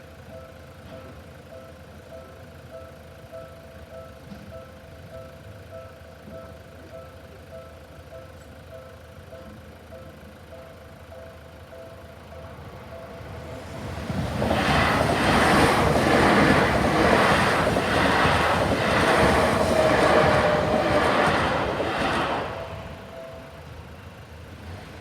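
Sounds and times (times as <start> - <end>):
level-crossing warning bell: 0.0 - 24.4
train wheels clattering: 12.4 - 23.6.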